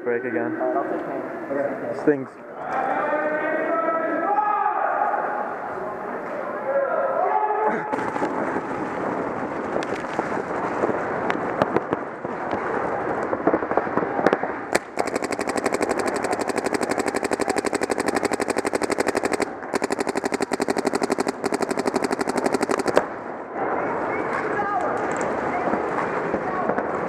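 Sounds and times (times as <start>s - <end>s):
paintball markers firing: 14.7s - 23.1s.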